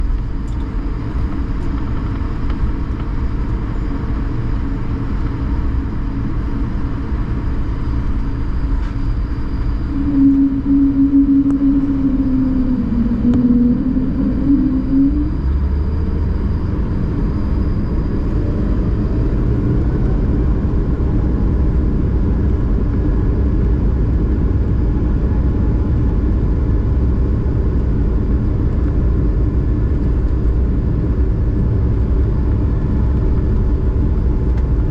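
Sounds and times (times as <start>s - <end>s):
airplane cabin engine rumble: 0.0s - 34.9s
strong tone dipping in pitch: 9.6s - 17.0s.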